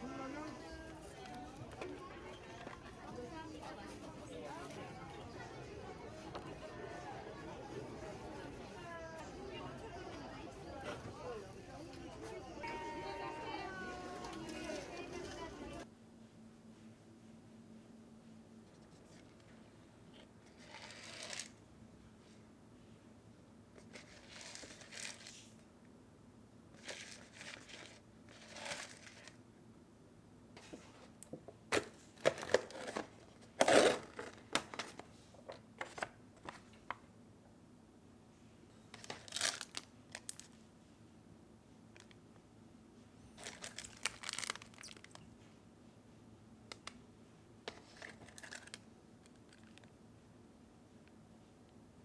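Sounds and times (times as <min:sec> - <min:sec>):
plastic packaging crinkling and tearing: 0:39.0 - 0:40.6, 0:43.4 - 0:45.3, 0:47.8 - 0:49.8.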